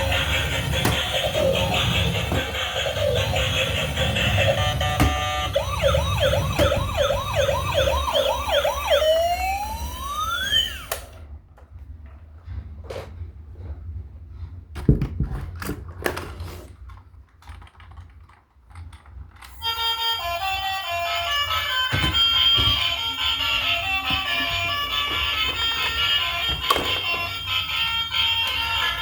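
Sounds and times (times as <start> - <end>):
toy electronic siren wailing: 0.0 - 11.2, 19.5 - 29.0.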